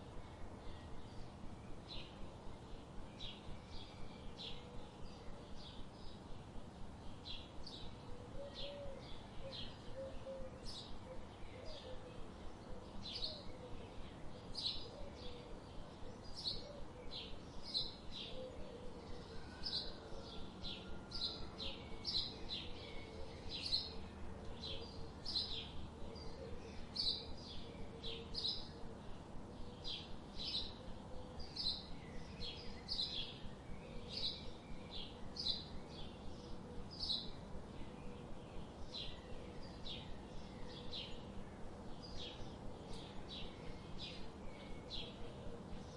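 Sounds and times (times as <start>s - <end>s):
small birds chirping: 0.0s - 45.9s.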